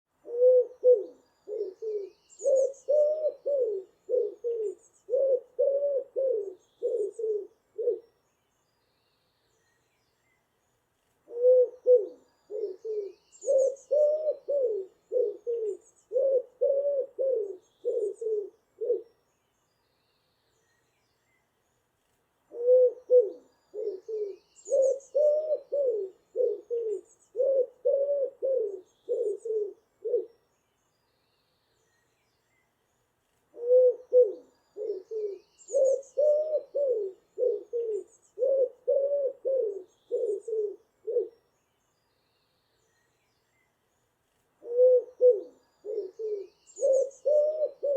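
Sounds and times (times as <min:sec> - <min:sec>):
pigeon cooing: 0:00.2 - 0:08.0, 0:11.3 - 0:19.1, 0:22.5 - 0:30.3, 0:33.5 - 0:41.3, 0:44.6 - 0:47.9.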